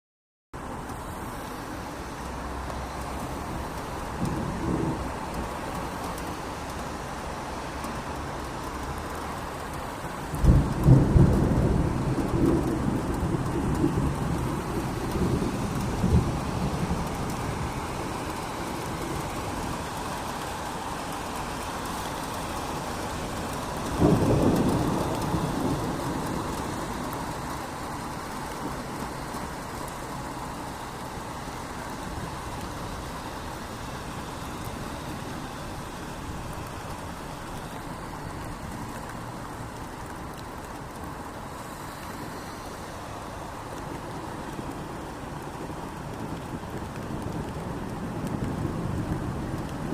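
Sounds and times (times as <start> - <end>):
steady rain: 0.6 - 49.9
thunder rumbling: 2.9 - 6.0, 8.9 - 41.1, 43.4 - 49.9
sharp thunderclap: 10.3 - 17.7, 23.8 - 27.1.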